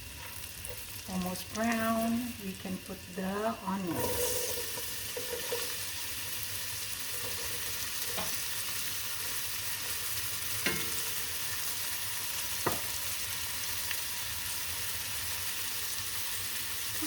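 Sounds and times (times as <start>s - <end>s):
food sizzling in a pan: 0.0s - 17.0s
utensil knocking against pan: 10.6s - 11.0s.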